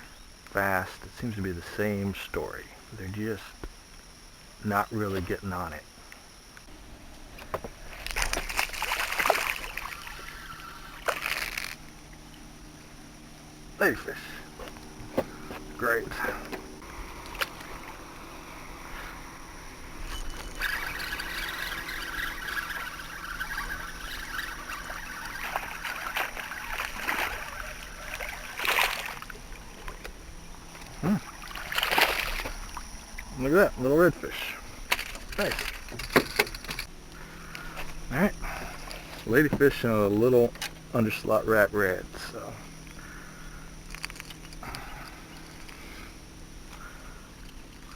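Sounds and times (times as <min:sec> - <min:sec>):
fish splashing in water: 0:07.8 - 0:12.3, 0:20.4 - 0:30.1, 0:30.7 - 0:32.9.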